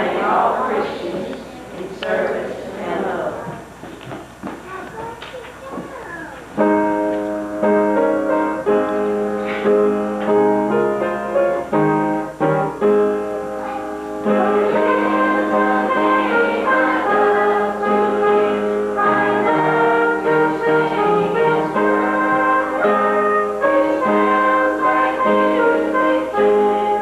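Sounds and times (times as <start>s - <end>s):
keyboard playing held chords: 6.6s - 27.0s.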